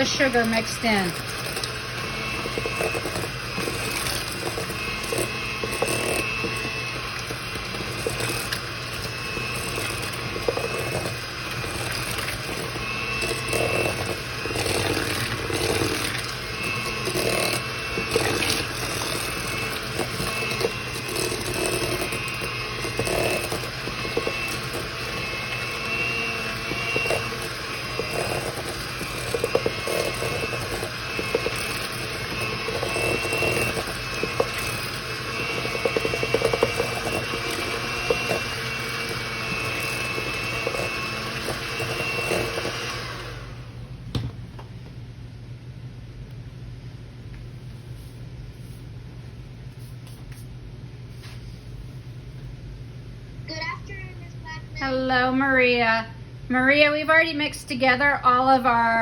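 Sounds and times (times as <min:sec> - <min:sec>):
electric mixer running: 0:00.0 - 0:44.3.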